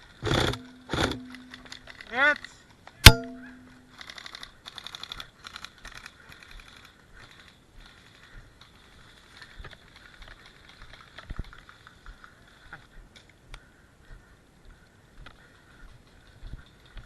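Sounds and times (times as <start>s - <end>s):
airsoft guns firing full auto: 0.2s - 1.9s
scattered clicks: 0.2s - 13.7s.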